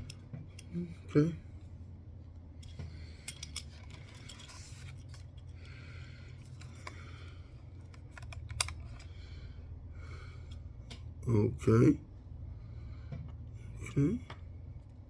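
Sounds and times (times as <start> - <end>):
steady low hum: 0.0 - 15.0
hard plastic parts clicking: 7.8 - 9.1.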